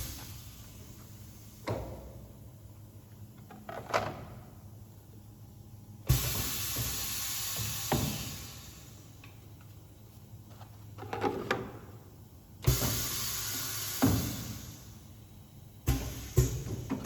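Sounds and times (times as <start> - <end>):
compressed air hissing: 6.1 - 9.1, 12.6 - 15.0.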